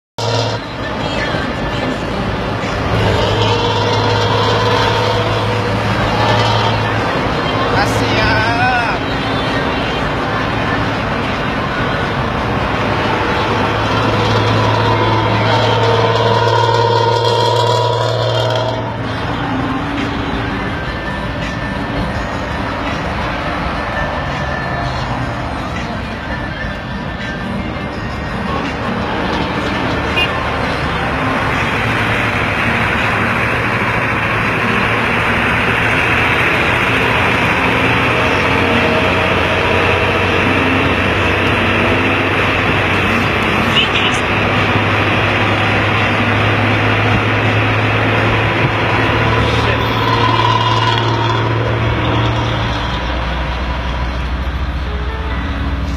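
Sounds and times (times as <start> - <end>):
bus diesel engine revving: 0.2 - 27.5, 28.4 - 55.9.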